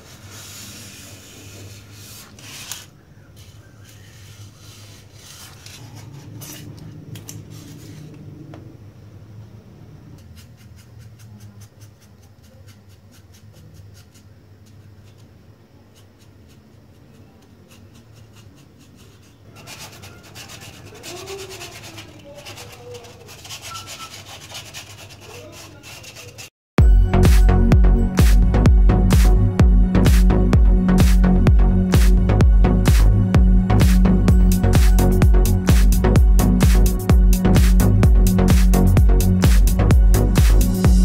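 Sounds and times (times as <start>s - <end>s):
styrofoam scraping by hand: 0.0s - 6.7s, 15.9s - 26.5s
steady low hum: 26.8s - 41.0s.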